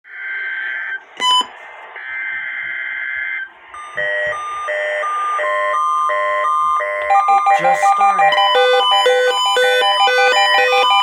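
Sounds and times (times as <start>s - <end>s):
alternating alert beeps: 3.0s - 11.0s.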